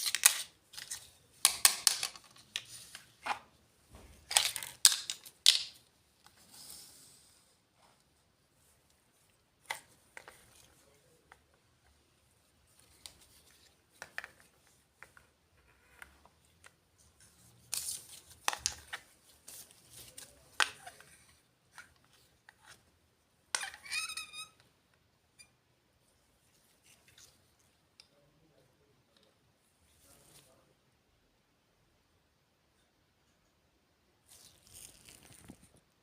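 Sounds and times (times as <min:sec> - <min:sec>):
plastic pieces clicking and tapping: 0:01.4 - 0:02.7, 0:04.3 - 0:05.8
packaging rustling and crinkling: 0:34.3 - 0:35.8.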